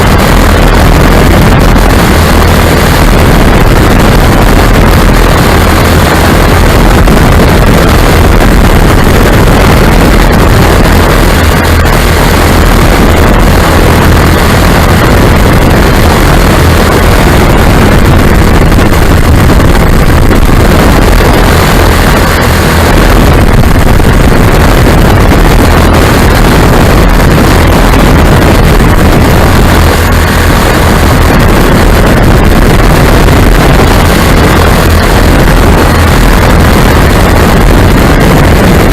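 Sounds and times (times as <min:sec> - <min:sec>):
aircraft engines running: 0:00.0 - 0:38.9
wind buffeting microphone: 0:00.0 - 0:38.9.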